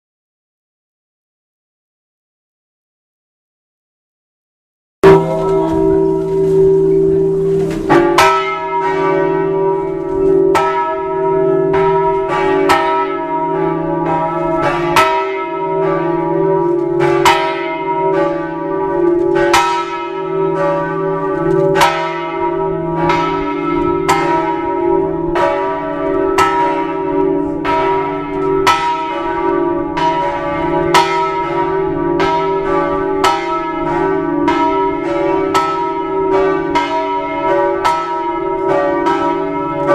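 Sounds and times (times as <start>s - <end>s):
large church bell tolling: 5.0s - 39.9s.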